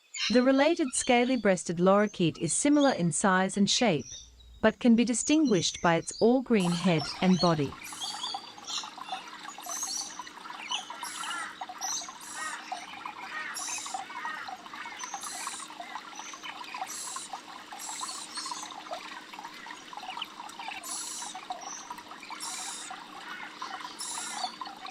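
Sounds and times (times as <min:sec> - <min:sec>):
parrots chattering: 0:06.6 - 0:19.0, 0:19.9 - 0:24.9.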